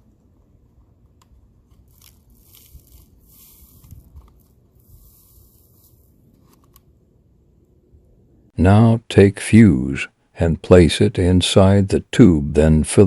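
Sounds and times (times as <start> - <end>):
powder scraping and hissing: 1.9 - 6.1.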